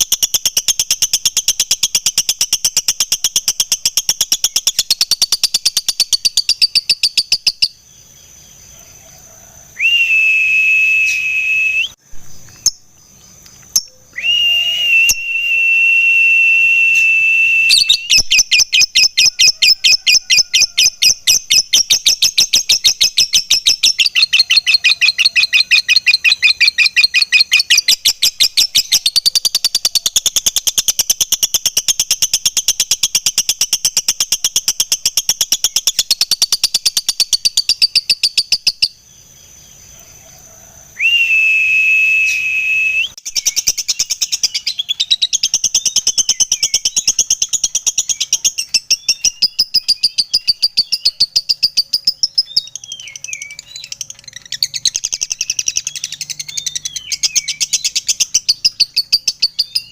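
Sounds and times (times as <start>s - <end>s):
bird chirping rapidly: 0.0s - 8.7s, 10.1s - 39.6s, 42.1s - 59.9s
bird high whistles: 9.8s - 12.0s, 13.8s - 29.1s, 41.0s - 45.4s.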